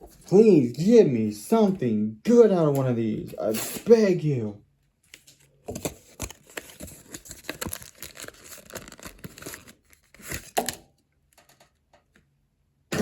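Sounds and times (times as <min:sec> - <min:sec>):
foil wrapper tearing and crinkling: 0:05.1 - 0:10.8.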